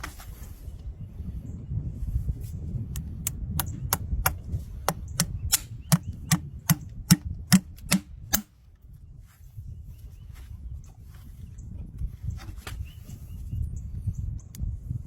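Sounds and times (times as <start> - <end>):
tool tapping on hoof: 3.6 - 8.5.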